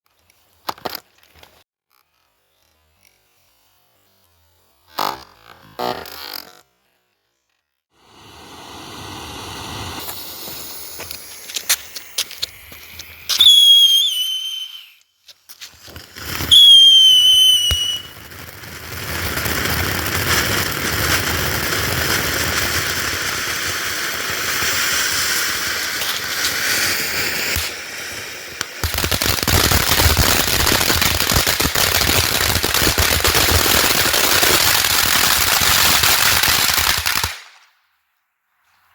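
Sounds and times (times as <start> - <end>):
hissing spray of sparks: 8.0 - 37.6
firework crackling: 8.0 - 37.9
firework pops: 9.7 - 23.7, 24.4 - 37.8
falling whistles: 13.2 - 15.1, 16.4 - 18.2.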